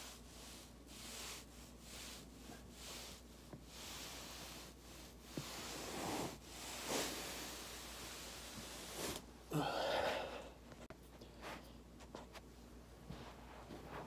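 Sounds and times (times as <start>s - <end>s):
body rubbing on foam roller: 0.0s - 9.3s.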